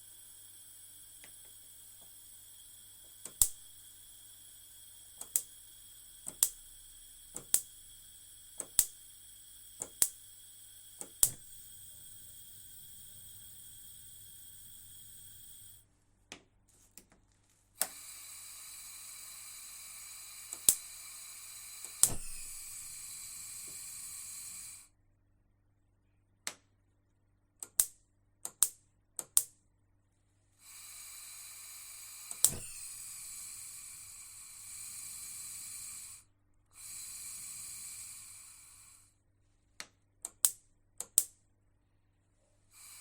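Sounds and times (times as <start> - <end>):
gas burners hissing: 0.0 - 15.8, 17.8 - 24.9, 30.6 - 36.2, 36.8 - 39.1, 42.8 - 43.0
cooker knob and igniter clicks: 3.2 - 3.6, 6.2 - 6.6, 7.3 - 7.7, 8.6 - 9.0, 9.8 - 10.2, 11.0 - 11.6, 20.5 - 20.9, 21.8 - 24.7, 32.3 - 33.0.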